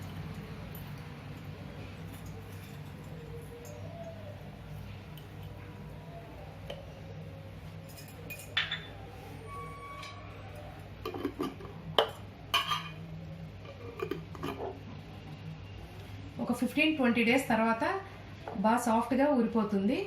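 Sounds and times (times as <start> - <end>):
low steady hum: 0.0 - 20.0
glass jar clinking: 7.9 - 8.9, 11.1 - 13.0.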